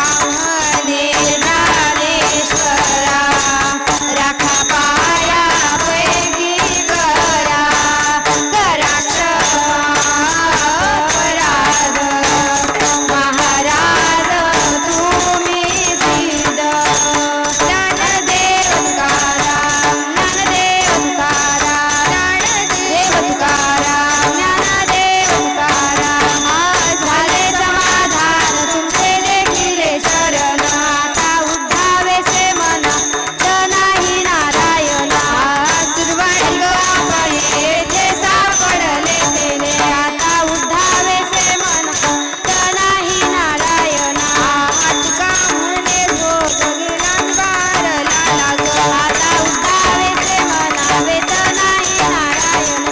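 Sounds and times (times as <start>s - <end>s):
drum beat: 0.0s - 52.9s
jingling hand cymbals: 0.0s - 52.9s.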